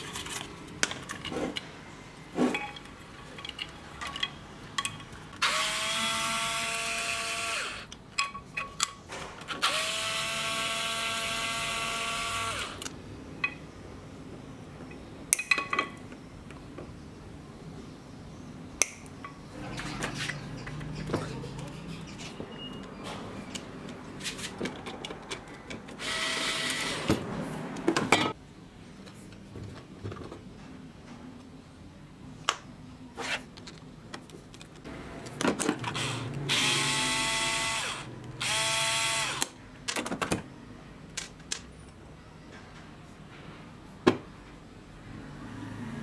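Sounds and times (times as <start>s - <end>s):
metal parts clicking and knocking: 2.5s - 5.4s
power drill running: 5.4s - 7.9s, 9.6s - 12.8s, 26.0s - 27.1s, 36.0s - 39.5s.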